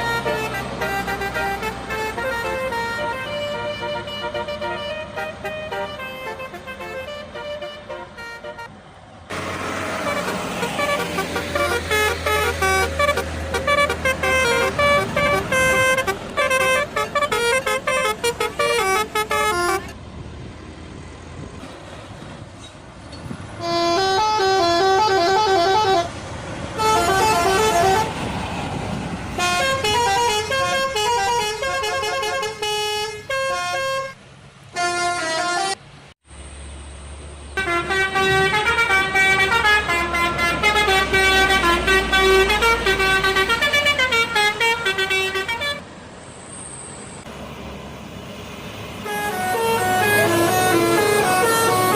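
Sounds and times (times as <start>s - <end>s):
bus horns playing melodies: 0.0s - 20.0s, 23.5s - 36.2s, 37.6s - 45.9s, 48.9s - 51.9s
traffic noise: 0.0s - 51.9s.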